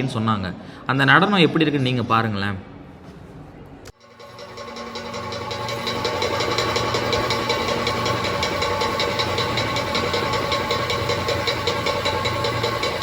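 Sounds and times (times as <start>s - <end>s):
rapid drumbeat: 4.0s - 13.0s
steady held tone: 4.0s - 13.0s.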